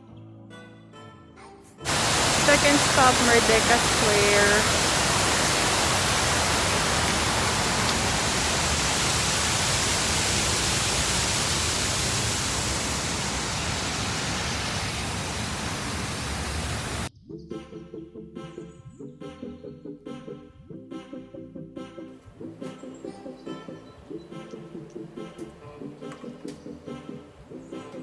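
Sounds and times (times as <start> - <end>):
loud rushing noise: 1.9 - 17.1
background music: 17.2 - 28.0.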